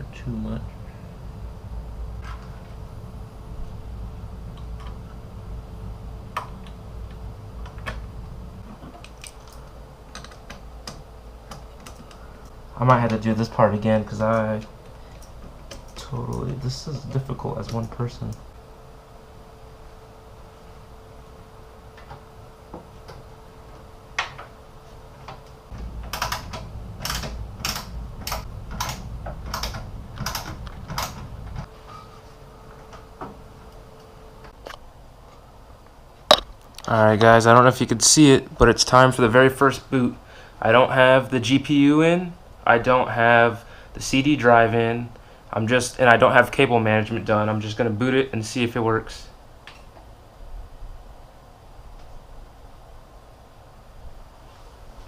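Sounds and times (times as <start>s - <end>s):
low handling rumble: 0.0s - 31.7s
low hum: 0.0s - 47.9s
computer parts clicking: 9.0s - 12.3s, 25.3s - 31.7s.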